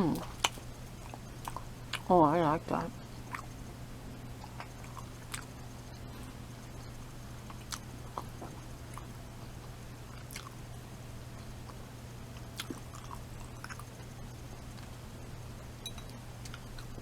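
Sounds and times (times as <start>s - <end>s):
person chewing crunchy pastry: 0.0s - 2.1s, 3.2s - 3.6s, 4.3s - 10.6s, 11.4s - 15.0s, 16.4s - 17.0s
steady low hum: 0.0s - 17.0s.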